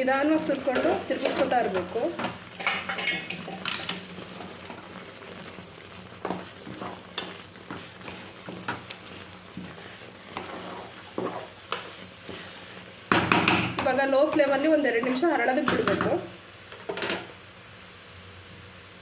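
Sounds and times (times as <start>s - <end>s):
soft sizzle: 0.0s - 19.0s
spoon scraping a pan: 0.2s - 4.9s, 6.1s - 17.3s.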